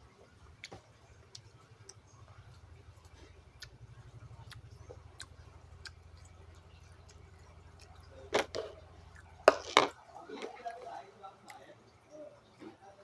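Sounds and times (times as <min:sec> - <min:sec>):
low steady hum: 0:00.0 - 0:13.0
chewing and mouth clicks: 0:00.4 - 0:12.7.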